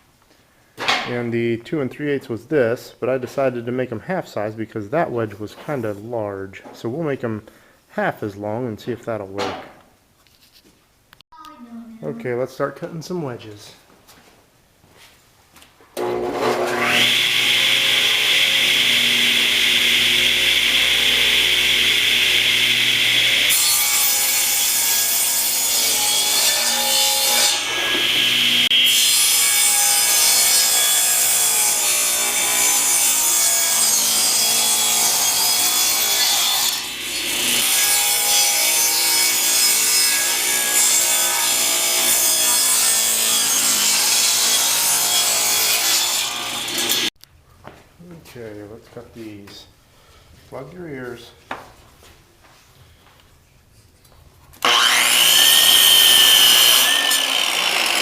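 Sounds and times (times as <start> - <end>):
power saw whine: 16.0 - 23.5, 27.6 - 28.7, 54.6 - 58.0
saw blade cutting wood: 16.0 - 47.1, 54.6 - 58.0.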